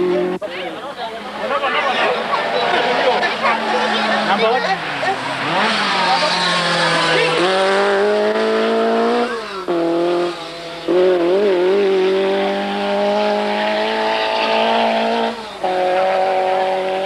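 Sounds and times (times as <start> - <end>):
rally car engine revving: 0.0 - 17.0.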